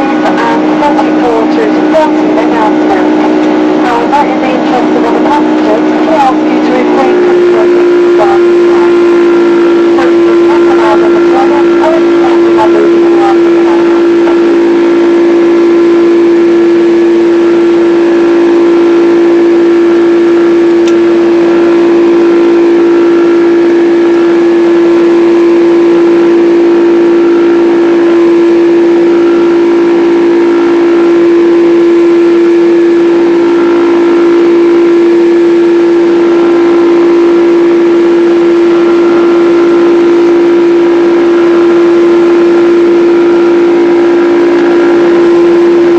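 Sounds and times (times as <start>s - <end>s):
jet engine drone in cabin: 0.0s - 45.9s.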